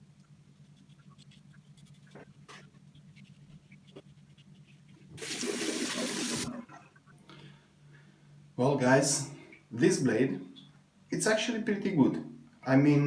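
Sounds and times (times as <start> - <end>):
water tap running: 5.2 - 6.5.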